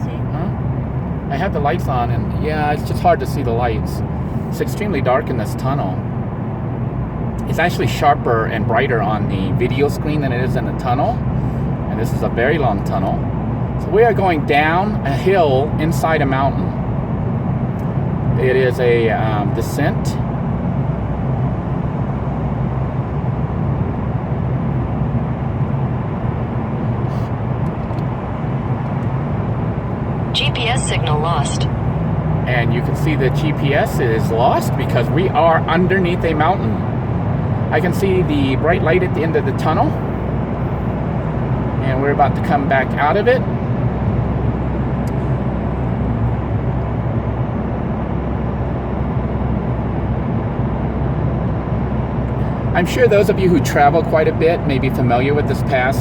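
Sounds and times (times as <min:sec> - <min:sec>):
road and engine rumble: 0:00.0 - 0:56.0.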